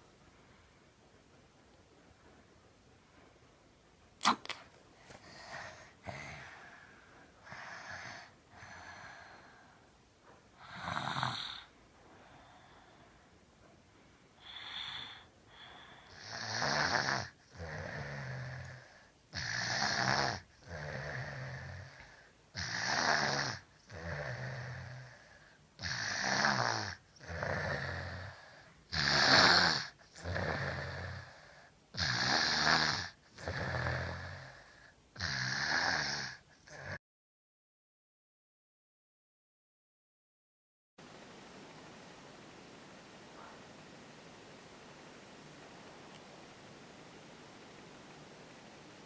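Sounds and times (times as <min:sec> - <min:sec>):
child snoring: 0:05.2 - 0:09.8, 0:10.6 - 0:13.0, 0:14.4 - 0:37.0.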